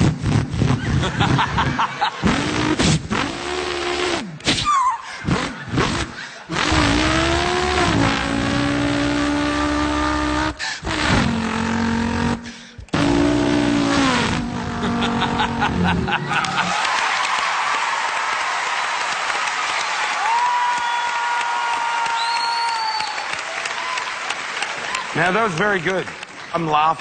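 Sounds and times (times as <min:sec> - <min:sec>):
man imitating car engine: 0:02.2 - 0:16.6.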